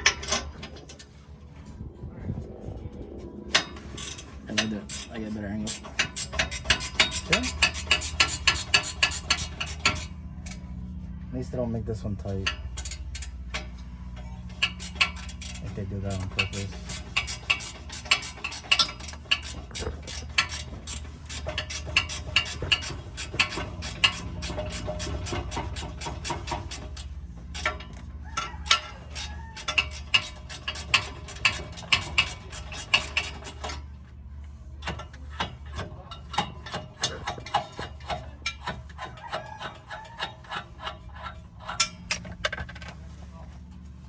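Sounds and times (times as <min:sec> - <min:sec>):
steady low hum: 0:00.0 - 0:38.9
socket ratchet clicking: 0:28.7 - 0:33.6.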